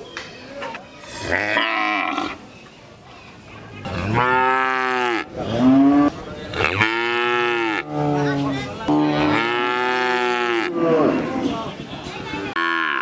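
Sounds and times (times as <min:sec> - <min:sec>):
cows mooing: 0:03.8 - 0:11.6, 0:12.5 - 0:13.0.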